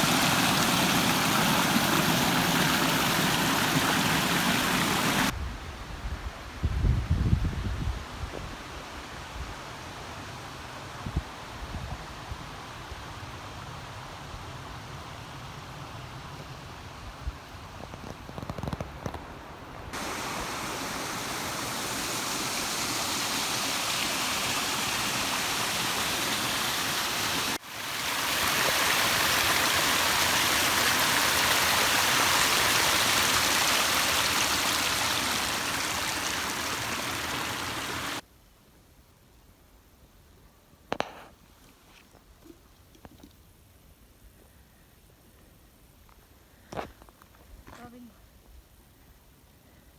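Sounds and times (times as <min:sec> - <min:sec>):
stream water rushing: 0:00.0 - 0:05.4, 0:20.0 - 0:38.2.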